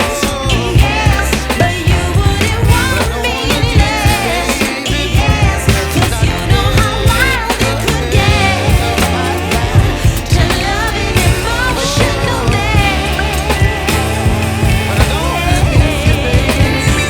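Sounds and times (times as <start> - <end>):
pop song with vocals: 0.0 - 17.0.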